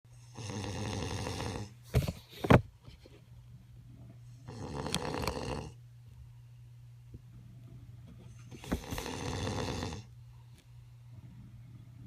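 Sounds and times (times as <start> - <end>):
steady low hum: 0.1 - 12.0
man snoring: 0.2 - 1.7, 4.4 - 5.8, 8.8 - 10.1.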